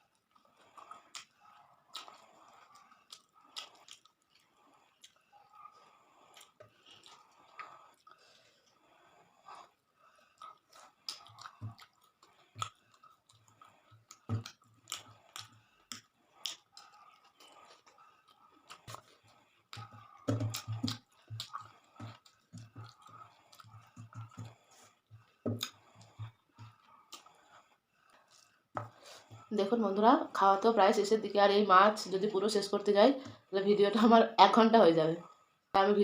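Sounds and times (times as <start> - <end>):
person chewing food: 0.0 - 29.5
wet mouth clicks and smacks: 3.1 - 4.4, 10.4 - 17.8, 19.7 - 24.5, 25.5 - 26.2.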